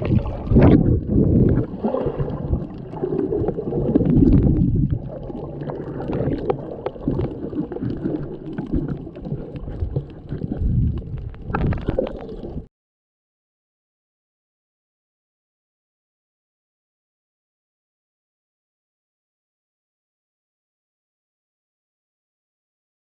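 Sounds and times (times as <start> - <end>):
water churning and gurgling: 0.0 - 12.7.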